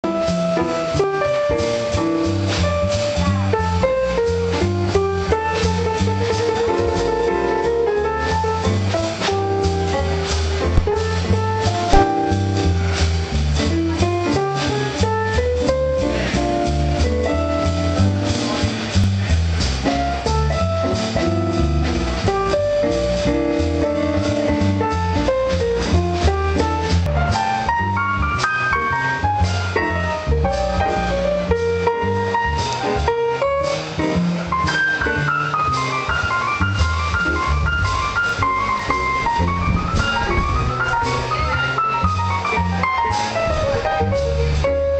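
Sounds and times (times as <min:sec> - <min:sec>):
bass line: 0:00.0 - 0:44.9
drums: 0:00.0 - 0:44.9
keyboard melody: 0:06.1 - 0:18.6, 0:26.7 - 0:44.9
guitar or keyboard notes: 0:07.7 - 0:15.0.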